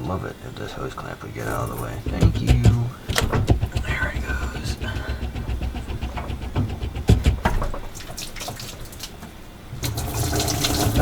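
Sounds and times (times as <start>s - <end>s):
sharp knocks: 1.4s - 9.3s
coolant pouring and splashing: 7.4s - 11.0s.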